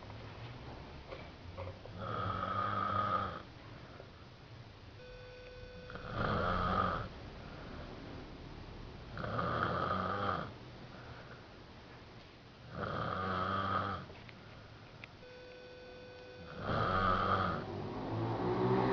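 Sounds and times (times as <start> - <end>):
snoring: 2.0 - 3.5, 5.9 - 7.1, 9.2 - 10.6, 12.7 - 14.1, 16.4 - 17.8.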